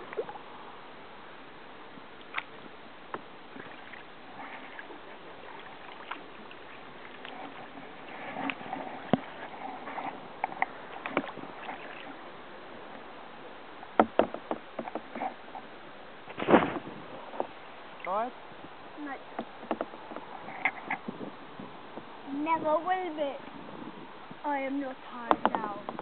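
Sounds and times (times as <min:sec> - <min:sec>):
paddle splashing in water: 0:00.0 - 0:00.5, 0:02.1 - 0:18.2
sharp knocks: 0:14.0 - 0:15.1.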